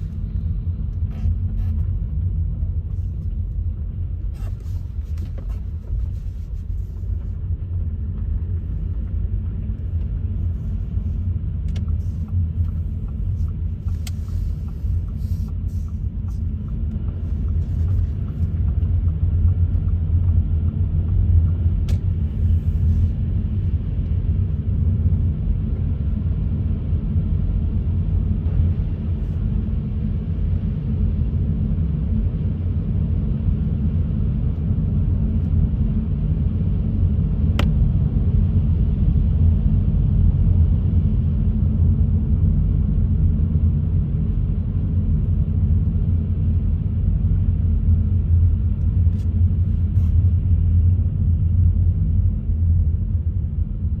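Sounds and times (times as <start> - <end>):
car engine and tyres on wet road: 0.0 - 29.9.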